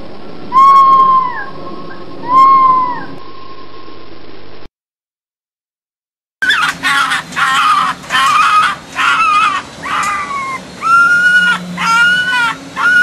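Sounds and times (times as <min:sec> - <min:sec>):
fox whining calls: 0:06.4 - 0:13.0.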